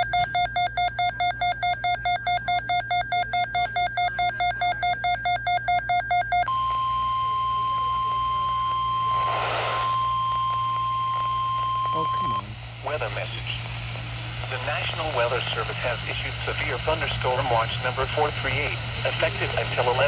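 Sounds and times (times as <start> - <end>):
warbling electronic alarm beeps: 0.0 - 12.4
steady single-pitch alert tone: 0.0 - 12.5
short burst of noise: 8.8 - 11.4.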